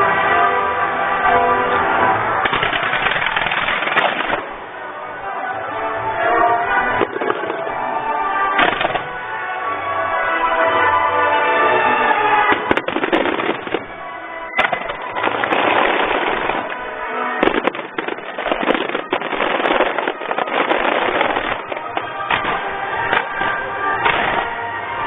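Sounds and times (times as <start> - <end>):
fireworks bangs and crackle: 2.1 - 4.7, 6.2 - 9.4, 12.1 - 25.0.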